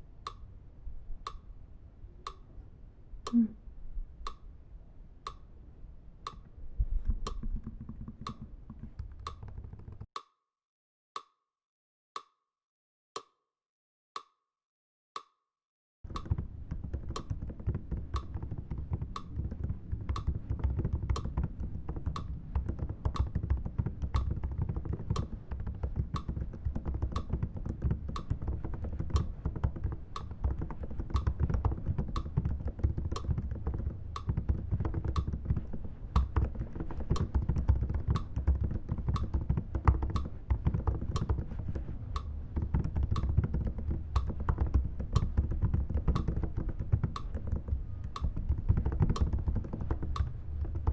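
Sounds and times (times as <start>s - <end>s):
sharp clicks: 1.2s - 1.5s, 5.2s - 5.5s, 6.2s - 6.5s, 7.1s - 10.3s, 16.1s - 50.9s
keyboard typing: 7.2s - 10.1s, 16.1s - 50.9s.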